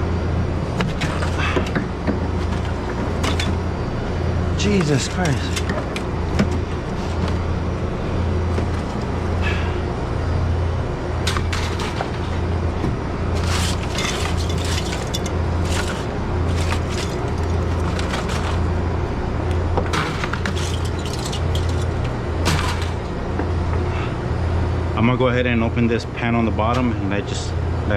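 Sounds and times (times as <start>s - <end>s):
low pulsing hum: 0.0s - 25.0s
knocking and cracking ice: 0.7s - 3.7s, 11.3s - 12.5s, 13.4s - 18.7s, 19.8s - 23.1s.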